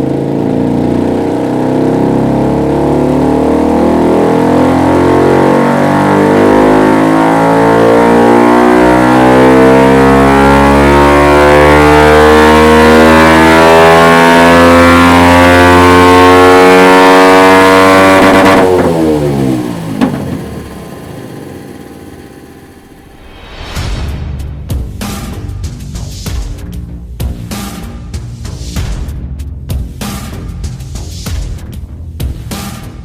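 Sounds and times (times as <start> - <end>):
motorcycle engine revving: 0.0 - 23.6
exhaust pop: 18.0 - 25.4.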